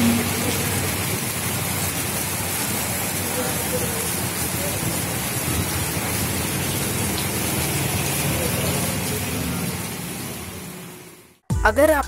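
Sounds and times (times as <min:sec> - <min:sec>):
heavy rain on roofs: 0:00.0 - 0:11.4.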